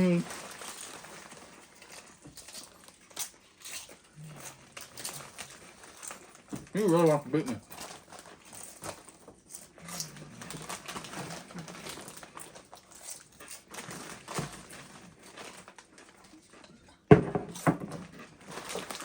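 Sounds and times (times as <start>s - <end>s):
people chewing crunchy chips: 0.0s - 17.1s, 18.0s - 19.0s
chip bag crinkling: 0.0s - 19.0s
loud rustle or knock: 17.1s - 18.2s.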